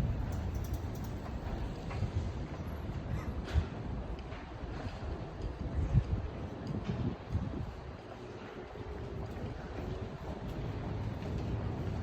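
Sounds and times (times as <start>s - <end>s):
low street rumble: 0.0s - 12.0s
wind buffeting microphone: 0.0s - 12.0s
faint ticks: 0.2s - 1.6s.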